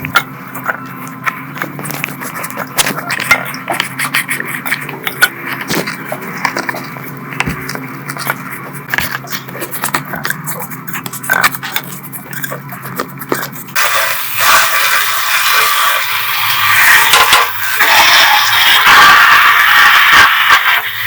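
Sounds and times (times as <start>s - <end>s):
irregular scraping with clicks: 0.0s - 13.8s
steady low hum: 0.0s - 15.0s.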